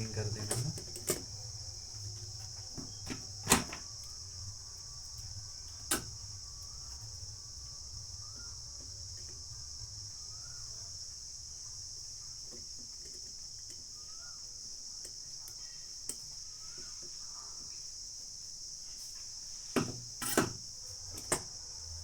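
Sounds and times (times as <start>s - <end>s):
high-pitched hiss: 0.0s - 22.0s
small tools clicking: 0.1s - 1.5s.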